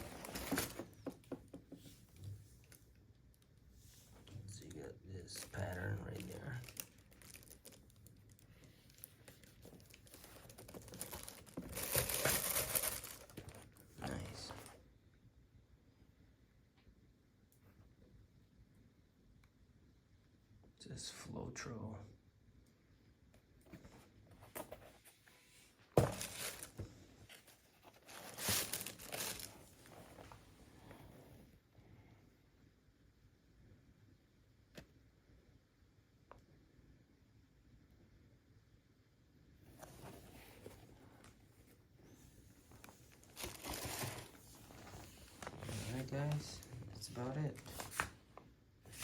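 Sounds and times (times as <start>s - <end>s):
packaging paper rustling: 5.3s - 14.7s, 26.0s - 30.4s, 42.8s - 48.2s.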